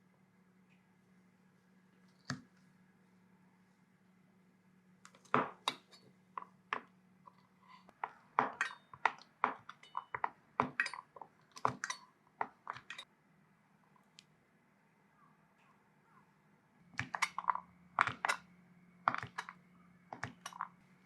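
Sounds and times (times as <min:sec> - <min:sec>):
low steady hum: 0:00.0 - 0:21.0
utensils and dishes clinking: 0:07.7 - 0:13.1, 0:20.2 - 0:20.7.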